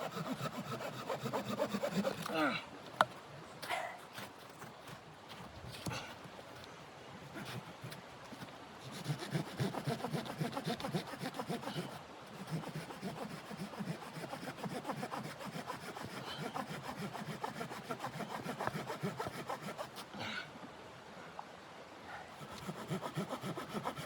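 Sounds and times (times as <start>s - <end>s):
hand saw rasping through wood: 0.0s - 2.3s, 7.3s - 8.0s, 8.8s - 20.0s, 22.4s - 24.0s.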